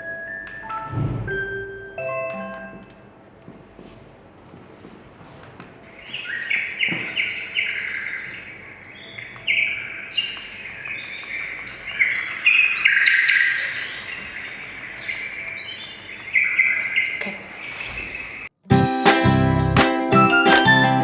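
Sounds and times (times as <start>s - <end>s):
birds chirping: 5.8s - 18.5s.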